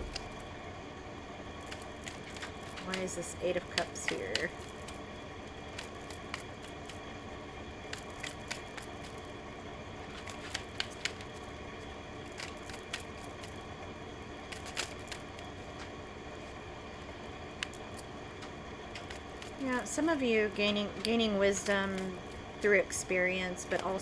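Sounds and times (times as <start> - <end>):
cards clicking and snapping: 0.0 - 0.5, 1.6 - 7.1, 7.8 - 9.3, 10.0 - 13.7, 14.4 - 20.0
room hum: 0.0 - 24.0.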